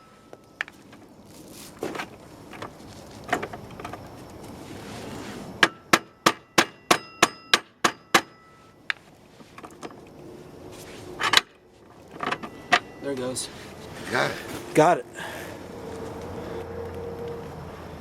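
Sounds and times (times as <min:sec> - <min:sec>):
hammer striking metal bolt: 0:05.6 - 0:08.5.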